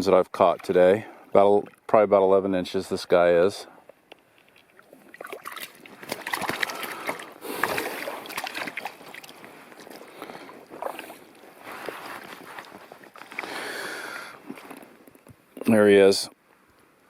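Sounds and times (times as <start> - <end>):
water splashing and sloshing: 0.0 - 2.0, 3.9 - 15.5.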